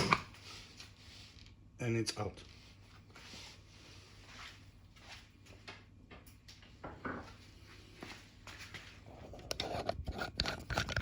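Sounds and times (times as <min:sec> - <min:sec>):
plastic parts clicking and rubbing: 0:09.4 - 0:11.0.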